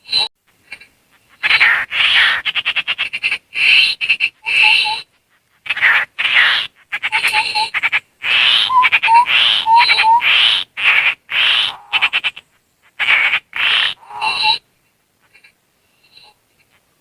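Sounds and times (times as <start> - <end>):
babbler bird harsh chatter: 0.2 - 14.6.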